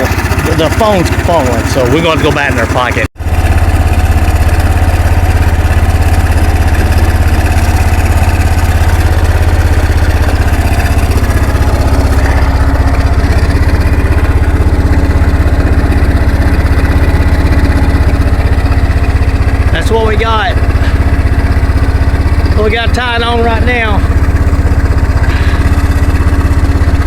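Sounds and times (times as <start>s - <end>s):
atv engine idling: 0.0s - 27.0s.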